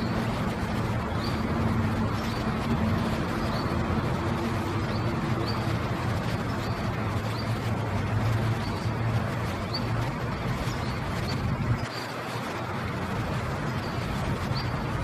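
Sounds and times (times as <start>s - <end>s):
ducklings peeping: 1.0s - 7.7s.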